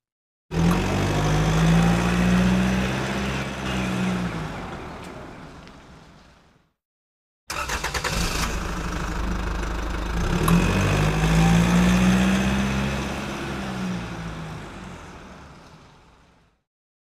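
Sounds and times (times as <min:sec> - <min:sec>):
engine starter clicking: 0:07.5 - 0:09.8
vehicle engine running: 0:08.5 - 0:15.7.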